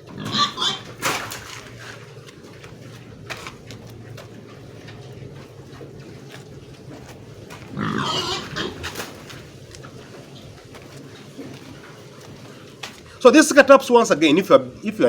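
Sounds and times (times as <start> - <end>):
loud pig call: 0.0 - 2.1, 4.5 - 12.7
pigs grunting and feeding: 0.0 - 15.0.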